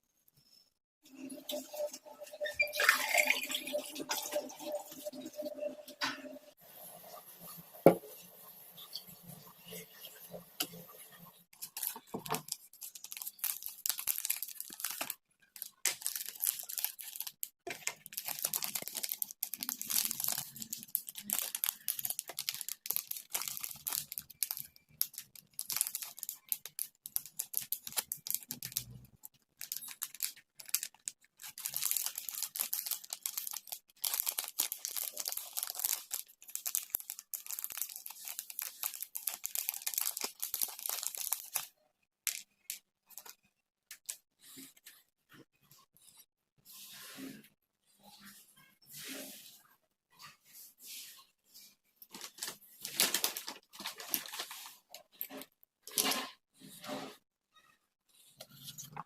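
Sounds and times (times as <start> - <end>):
dry crinkling and scratching: 11.6 - 43.4, 52.1 - 56.3.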